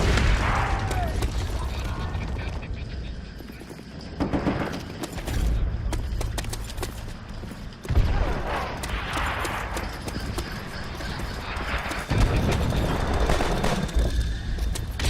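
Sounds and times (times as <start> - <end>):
gunshots: 0.0 - 2.8, 7.8 - 15.0.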